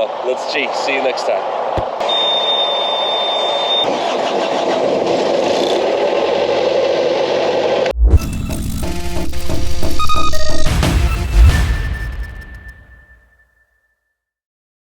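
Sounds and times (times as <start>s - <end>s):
truck engine and road rumble: 1.4s - 8.8s
high steady beep: 2.0s - 3.9s, 9.8s - 13.2s
music: 8.0s - 14.2s.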